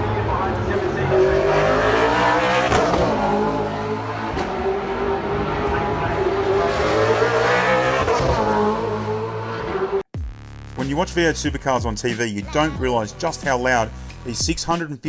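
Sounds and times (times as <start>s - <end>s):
race cars passing: 0.0s - 10.1s.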